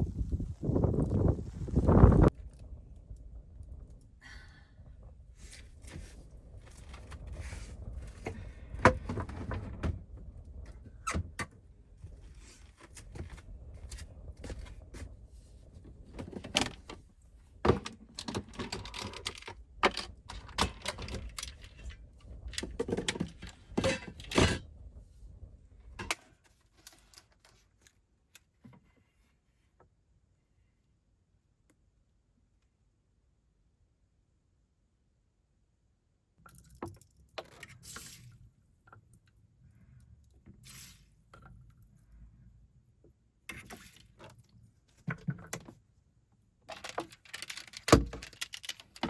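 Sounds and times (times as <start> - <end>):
objects clicking and thunking: 17.6 - 24.7, 46.7 - 49.0.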